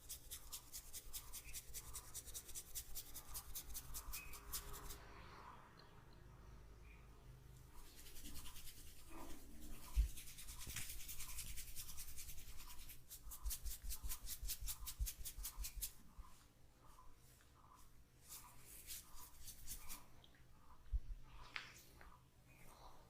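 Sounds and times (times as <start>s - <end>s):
hands rubbing hair and scalp: 0.0s - 5.0s, 7.8s - 16.4s, 17.8s - 20.0s.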